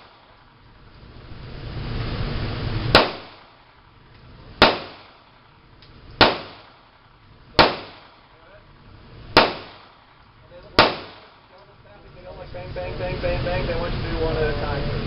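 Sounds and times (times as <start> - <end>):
handgun shots with echo: 2.9 - 3.4, 4.6 - 5.2, 6.2 - 6.8, 7.6 - 8.2, 9.4 - 10.0, 10.7 - 11.4.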